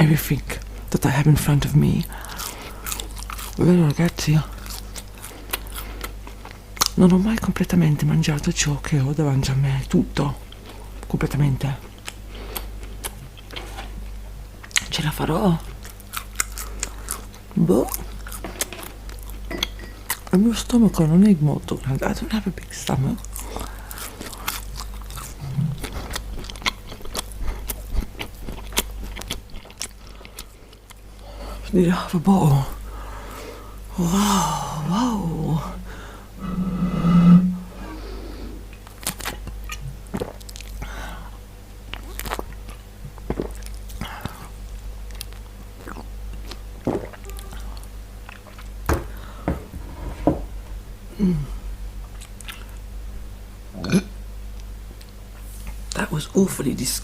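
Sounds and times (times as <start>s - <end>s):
person chewing crunchy food: 1.9s - 7.0s, 15.6s - 20.3s, 23.2s - 31.3s, 38.7s - 40.9s, 41.8s - 48.8s
low pitch-dropping sound: 36.4s - 38.0s.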